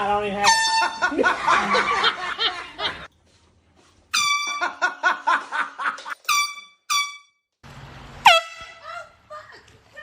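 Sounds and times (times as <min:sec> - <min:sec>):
air horn blasts: 0:04.1 - 0:04.7, 0:06.2 - 0:07.4, 0:08.2 - 0:08.8.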